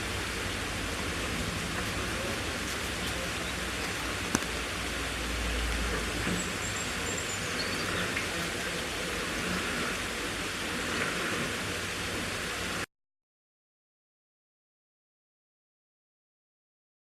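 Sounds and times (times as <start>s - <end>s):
rain-like outdoor hiss: 0.0s - 12.9s.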